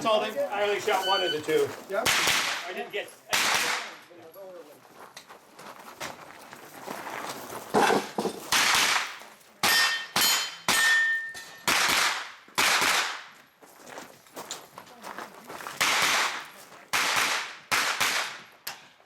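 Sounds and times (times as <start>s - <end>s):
gunshots echoing: 2.0s - 2.7s, 3.3s - 4.0s, 8.5s - 13.2s, 15.8s - 18.5s
steel targets ringing: 9.6s - 11.7s.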